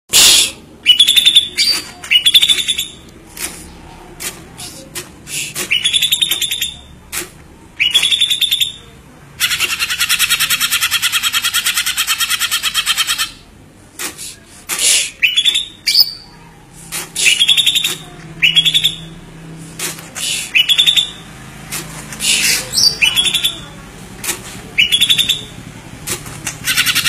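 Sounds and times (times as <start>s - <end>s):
songbird harsh chirps: 0.2s - 3.1s, 5.4s - 6.9s, 7.8s - 8.8s, 14.8s - 16.3s, 17.2s - 19.1s, 20.2s - 21.2s, 22.2s - 23.8s, 24.8s - 25.6s.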